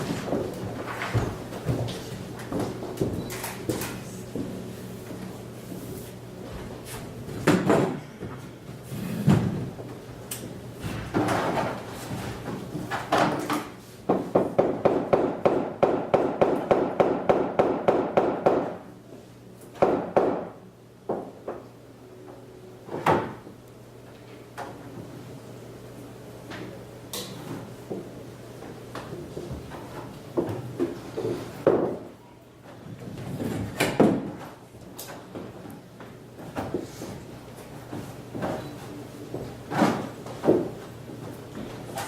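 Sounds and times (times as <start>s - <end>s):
objects knocking and clunking: 7.3s - 10.0s, 10.8s - 15.2s, 27.2s - 32.2s.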